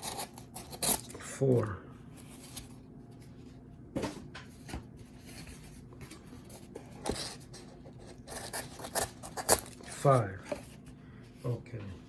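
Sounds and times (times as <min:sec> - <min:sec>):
knife cutting cardboard: 0:00.0 - 0:01.2, 0:06.4 - 0:10.6.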